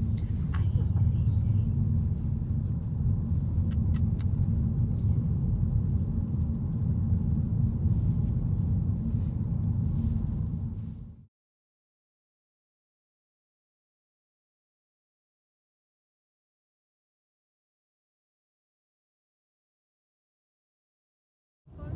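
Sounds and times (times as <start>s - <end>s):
car road noise rumble: 0.0s - 11.3s, 21.7s - 21.9s.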